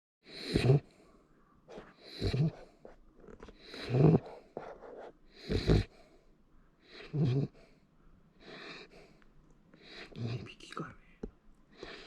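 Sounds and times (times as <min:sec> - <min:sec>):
puppy snoring: 0:00.2 - 0:00.9, 0:01.7 - 0:06.1, 0:06.8 - 0:07.8, 0:08.4 - 0:09.2, 0:09.8 - 0:10.7, 0:11.7 - 0:12.0.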